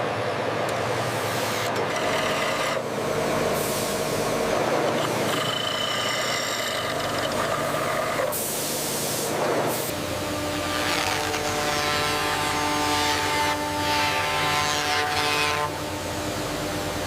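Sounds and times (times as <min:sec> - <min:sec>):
industrial machinery hum: 0:00.0 - 0:17.0
hisses of released air: 0:08.3 - 0:09.9.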